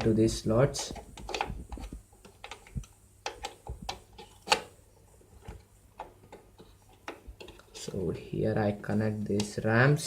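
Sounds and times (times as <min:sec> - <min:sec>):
plastic clicks of memory modules: 0:00.7 - 0:04.7.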